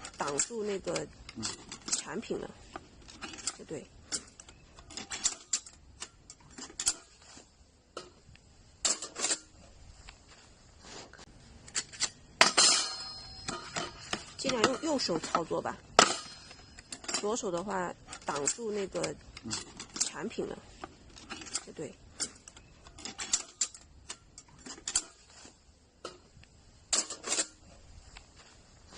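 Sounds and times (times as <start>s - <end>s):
metal parts clinking and knocking: 0.0s - 7.2s, 8.8s - 9.5s, 11.7s - 25.3s, 26.9s - 27.6s
metal clatter with ring: 11.7s - 25.4s
clicks and taps of metal fire pit: 11.9s - 25.4s.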